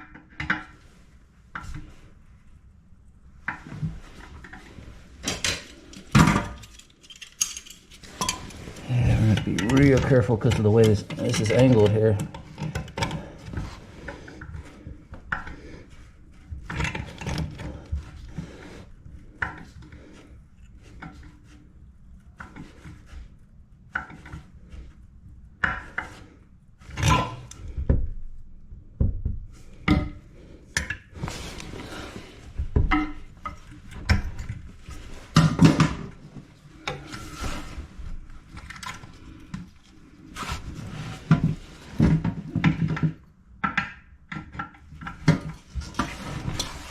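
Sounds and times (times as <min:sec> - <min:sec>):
tools knocking and scraping: 0:03.4 - 0:15.6, 0:29.0 - 0:37.8.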